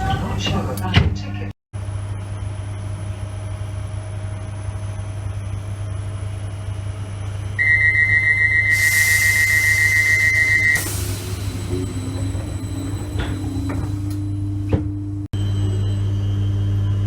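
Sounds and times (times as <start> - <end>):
train hum: 5.6 - 15.5
high pulsing warning beeps: 7.6 - 14.4
loud hiss: 8.7 - 12.2.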